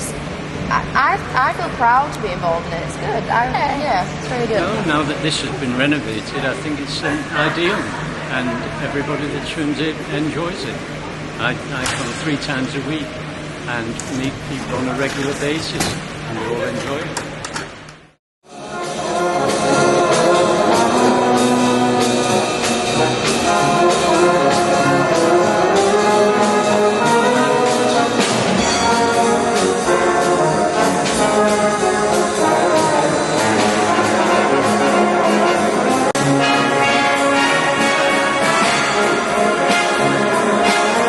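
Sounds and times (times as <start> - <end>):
brass band music: 4.4 - 13.0, 18.4 - 41.0.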